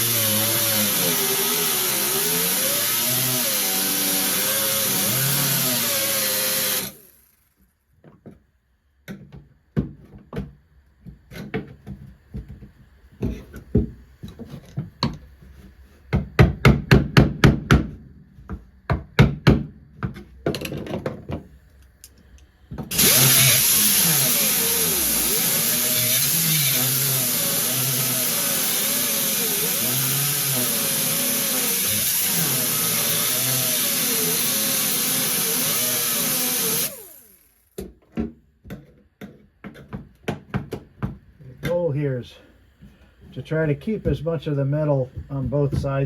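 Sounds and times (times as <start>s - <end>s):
power tool cutting metal: 0.0s - 7.3s, 22.9s - 37.6s.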